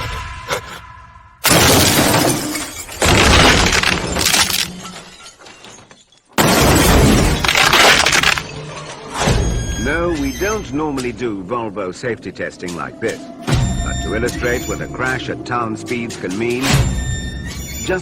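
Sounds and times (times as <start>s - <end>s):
glass shattering: 1.4s - 9.0s.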